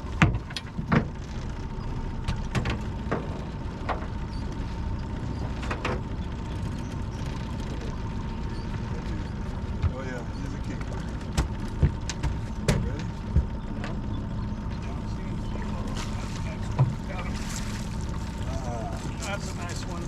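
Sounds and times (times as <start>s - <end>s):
boat motor running: 0.0s - 20.0s
sharp knocks and clicks: 11.1s - 14.0s.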